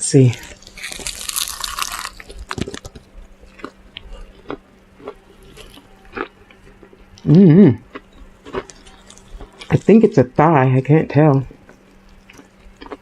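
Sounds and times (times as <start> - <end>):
fried chicken crackling: 0.1 - 10.2
person humming: 7.2 - 7.8.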